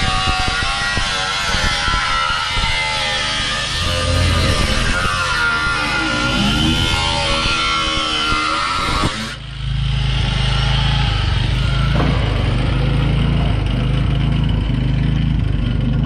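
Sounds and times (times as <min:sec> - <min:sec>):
engine idling with low drone: 0:00.0 - 0:16.0.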